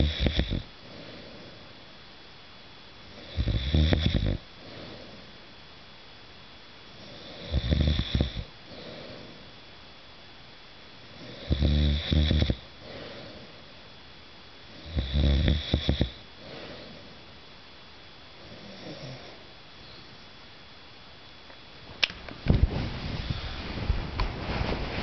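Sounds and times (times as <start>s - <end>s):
man snoring loudly: 0.0s - 0.7s, 3.2s - 4.4s, 7.1s - 8.9s, 11.2s - 12.6s, 14.7s - 16.2s.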